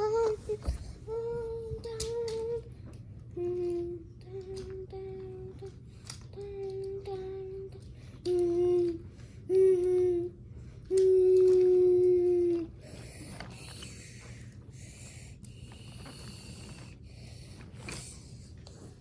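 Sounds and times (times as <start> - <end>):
child humming: 6.4 - 13.9.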